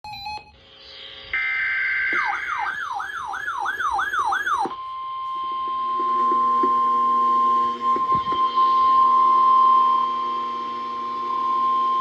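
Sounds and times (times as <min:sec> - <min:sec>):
falling siren-like sweeps: 0:00.1 - 0:06.0
steady high alarm tone: 0:00.1 - 0:12.0.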